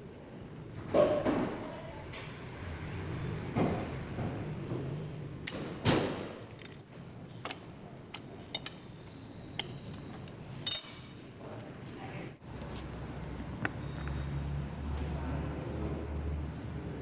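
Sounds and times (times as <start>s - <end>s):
metal tools clinking and knocking: 5.2s - 11.2s.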